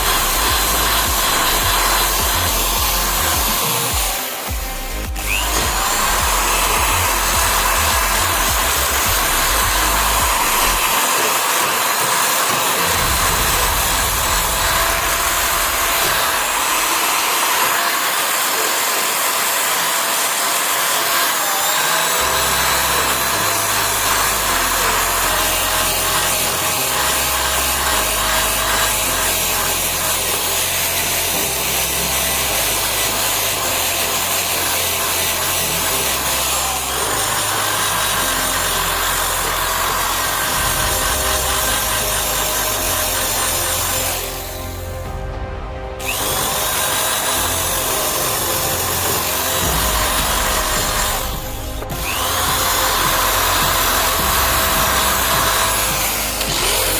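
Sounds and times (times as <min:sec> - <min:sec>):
background music: 0:00.0 - 0:56.9
electric power tool running: 0:00.0 - 0:56.9.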